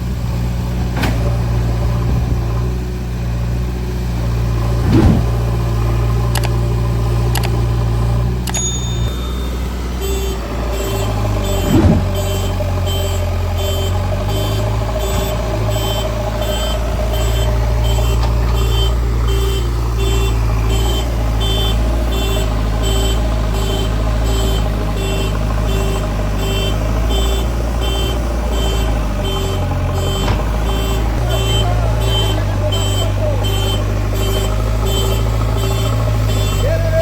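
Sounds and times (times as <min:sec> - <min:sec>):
engine humming: 0:00.0 - 0:37.0
short thud: 0:04.8 - 0:05.4, 0:11.6 - 0:12.2
reversing alarm beeps: 0:08.5 - 0:36.7.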